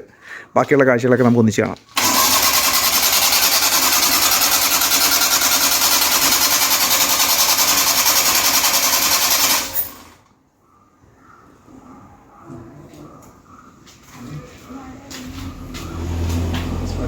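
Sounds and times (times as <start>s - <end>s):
engine running with rattling beat: 2.0s - 10.1s, 15.4s - 17.0s.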